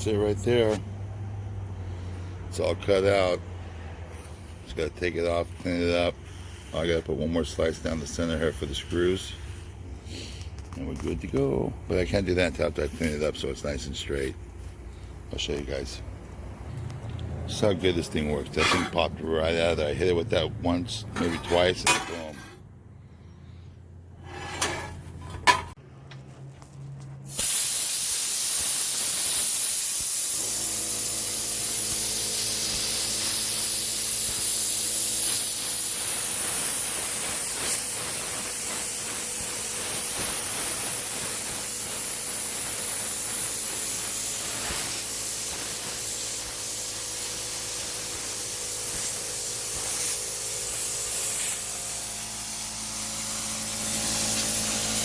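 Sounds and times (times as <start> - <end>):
plasma cutter hiss: 27.3 - 55.0.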